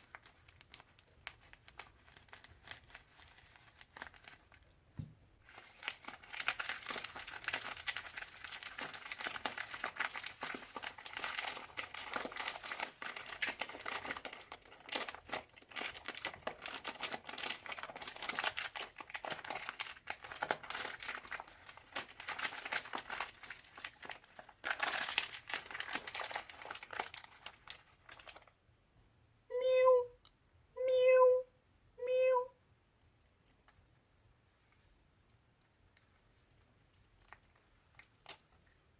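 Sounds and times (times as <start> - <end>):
crunchy slime crackling: 5.4 - 28.5.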